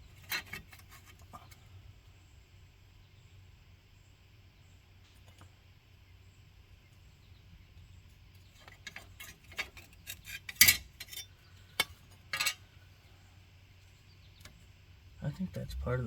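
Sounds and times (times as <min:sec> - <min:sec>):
hand tools clinking on metal: 0:08.7 - 0:12.6.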